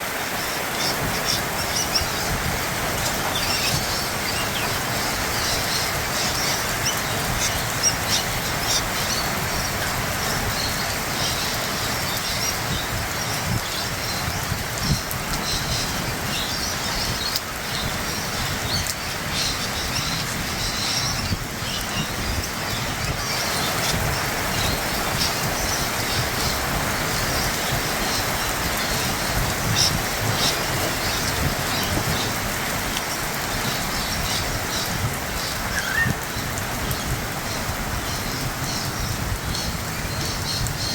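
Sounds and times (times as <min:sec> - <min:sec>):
sharp raindrops: 0:00.0 - 0:40.9
steady rain falling: 0:00.0 - 0:40.9.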